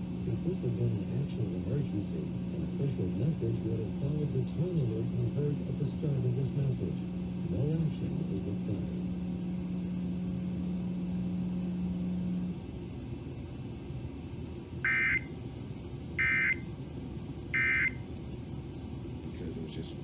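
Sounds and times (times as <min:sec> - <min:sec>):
steady low hum: 0:00.0 - 0:20.0
data tone bursts: 0:14.9 - 0:15.3, 0:16.2 - 0:16.6, 0:17.6 - 0:18.0.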